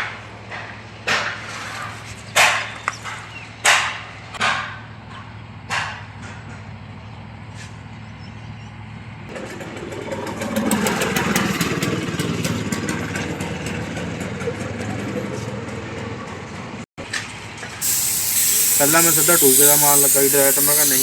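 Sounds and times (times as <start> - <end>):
motor engine running: 9.3 - 16.0, 17.8 - 21.0.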